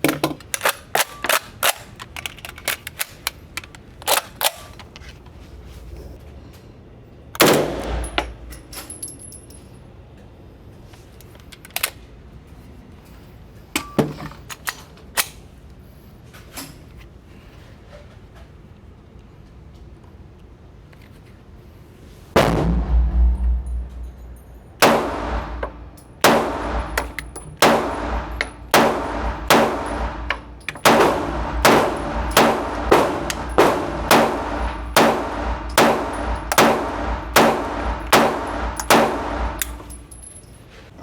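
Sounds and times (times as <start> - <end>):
single gunshots with echo: 22.4 - 39.7.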